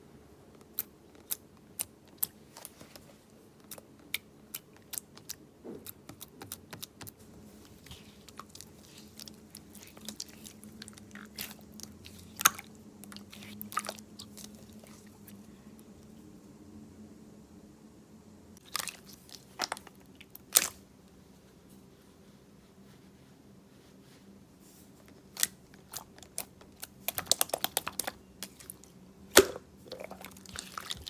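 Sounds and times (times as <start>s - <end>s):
slime clicking and crackling: 0.6s - 2.8s, 3.6s - 15.1s, 25.2s - 31.0s
loud slime pop: 29.3s - 29.6s.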